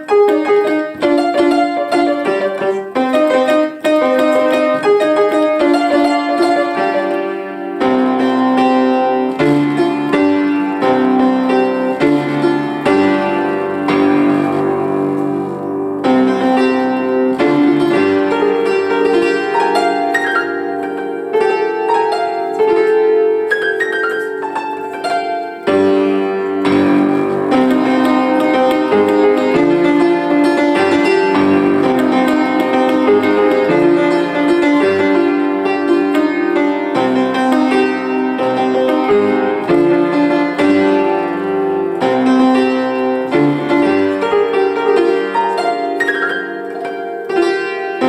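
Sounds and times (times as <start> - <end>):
keyboard notes and chords: 0.0 - 48.0.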